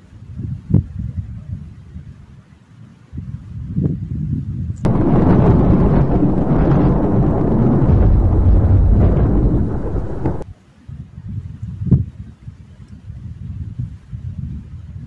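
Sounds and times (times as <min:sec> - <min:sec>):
loud thunder rumbling: 0:04.9 - 0:10.4.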